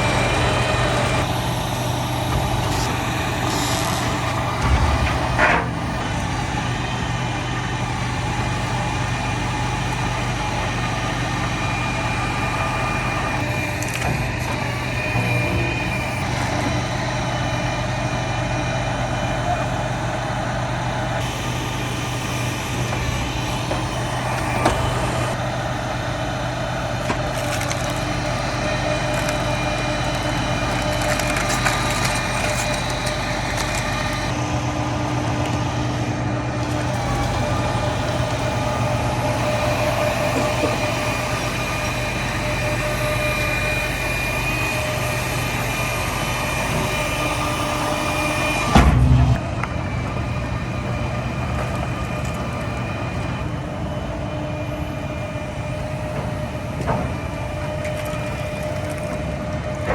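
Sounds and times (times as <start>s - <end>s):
large engine running under load: 0.0s - 59.9s
wood crunching and splintering: 26.3s - 34.3s, 56.2s - 59.9s.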